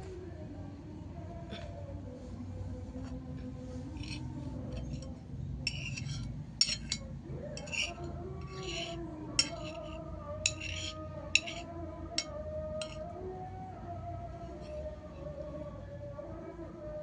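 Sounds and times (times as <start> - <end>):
faint music: 0.0 - 17.0
cutlery scraping a plate: 3.9 - 13.0.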